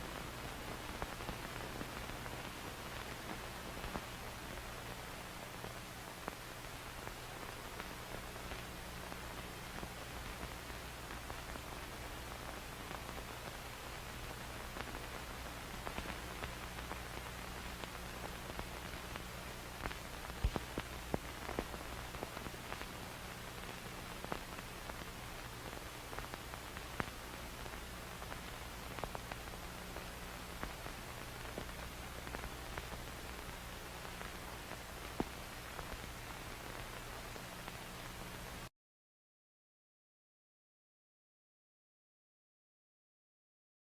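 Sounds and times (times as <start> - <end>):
steady hiss: 0.0 - 38.7
film crackle pops and clicks: 12.8 - 38.6.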